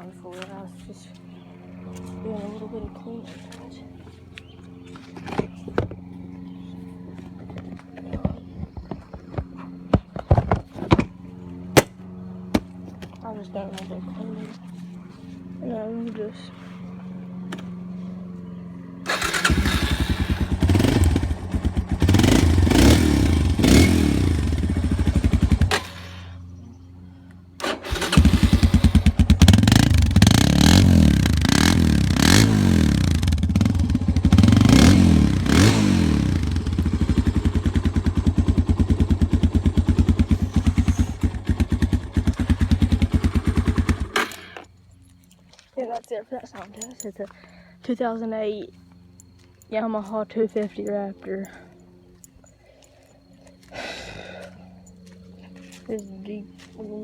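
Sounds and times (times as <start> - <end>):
atv engine revving: 0.7 - 44.8.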